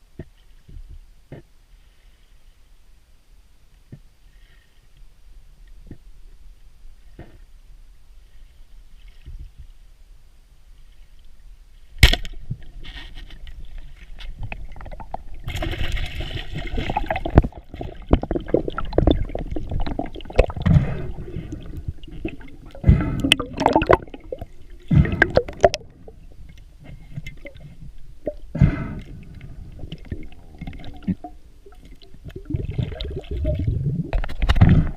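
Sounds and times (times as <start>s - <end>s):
water gurgling and sloshing: 12.4s - 34.9s.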